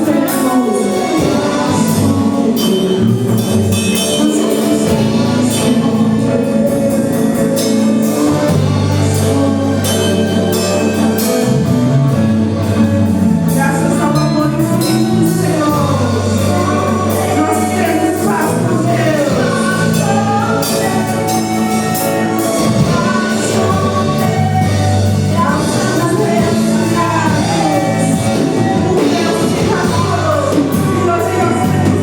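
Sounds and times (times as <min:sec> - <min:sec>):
worship singing with instruments: 0:00.0 - 0:32.0.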